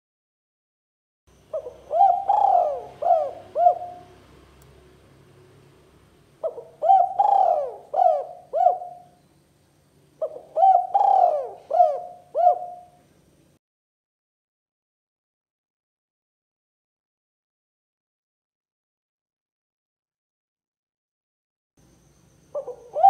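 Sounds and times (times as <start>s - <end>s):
dove cooing: 1.5s - 4.3s, 6.4s - 9.2s, 10.2s - 13.1s, 22.5s - 23.0s.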